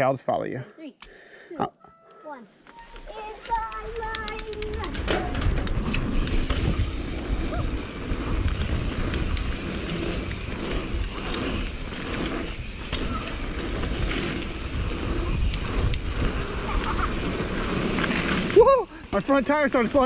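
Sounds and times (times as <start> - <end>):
bike rattles and clicks: 2.9 - 20.0
bike tyres rolling on dirt: 3.8 - 20.0
wind rumbling on microphone: 4.6 - 19.1.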